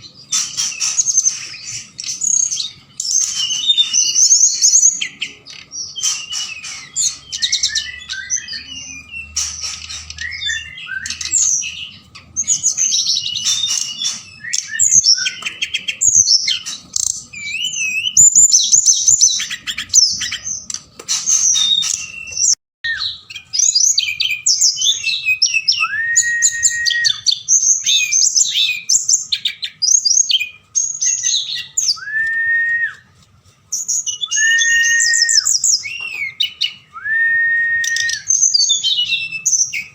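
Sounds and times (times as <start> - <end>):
bird whistle: 0.0 - 33.1, 33.9 - 39.9
songbird chirping and trilling: 0.0 - 39.9.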